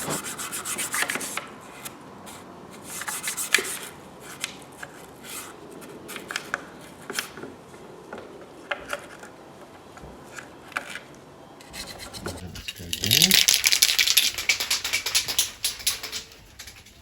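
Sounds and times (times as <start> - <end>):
scrubbing scratchy strokes: 11.6 - 13.6.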